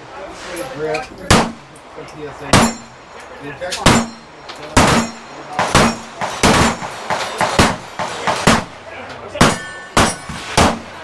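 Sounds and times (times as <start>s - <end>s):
pistol shots: 1.3s - 1.6s, 3.8s - 4.2s, 4.8s - 8.8s, 9.4s - 11.0s
metallic clang ringing: 2.6s - 3.0s, 3.7s - 8.7s, 9.4s - 11.0s.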